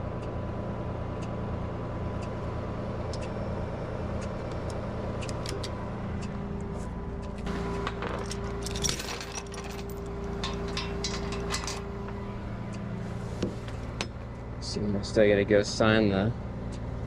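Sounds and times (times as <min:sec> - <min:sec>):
steady humming tone: 0:00.0 - 0:17.0
truck engine idling: 0:00.0 - 0:17.0
metallic clinks and clicks: 0:07.7 - 0:11.9.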